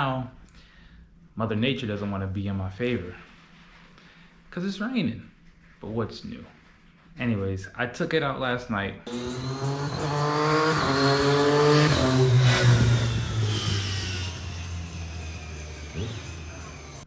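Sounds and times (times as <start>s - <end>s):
motorcycle engine revving: 9.1s - 17.0s.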